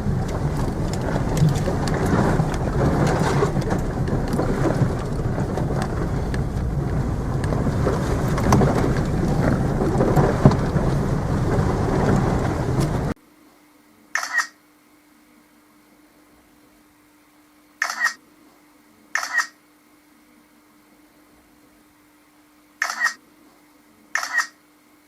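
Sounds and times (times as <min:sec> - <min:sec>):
low rumble: 0:00.0 - 0:13.2
steady rain falling: 0:00.0 - 0:13.2.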